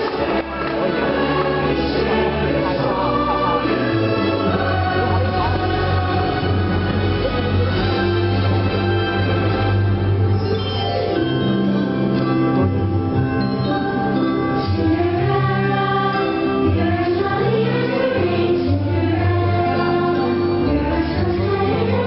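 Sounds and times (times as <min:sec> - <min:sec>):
choir singing held notes: 0:00.0 - 0:09.7, 0:13.7 - 0:22.0
orchestral music: 0:00.0 - 0:22.0.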